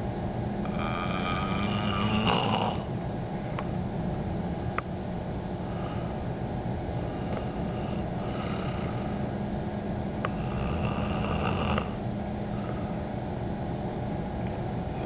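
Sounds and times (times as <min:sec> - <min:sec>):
man snoring: 0:00.7 - 0:02.9, 0:07.2 - 0:09.2, 0:10.3 - 0:13.0.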